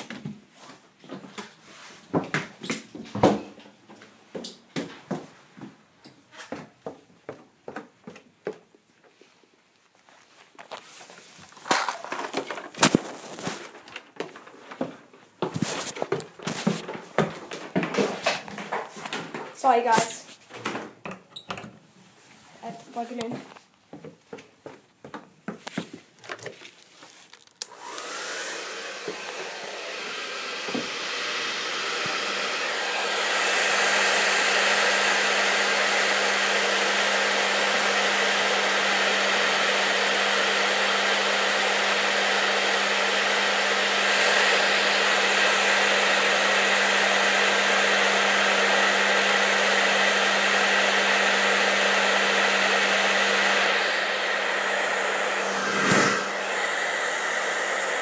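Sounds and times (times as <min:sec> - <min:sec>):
hair dryer blowing: 0:11.5 - 0:13.7, 0:15.4 - 0:20.3, 0:22.6 - 0:23.3, 0:27.5 - 0:58.0.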